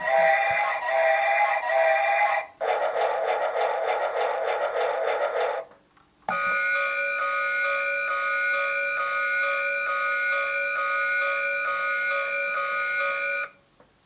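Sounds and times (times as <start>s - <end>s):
tinny electronic melody: 6.3s - 13.6s.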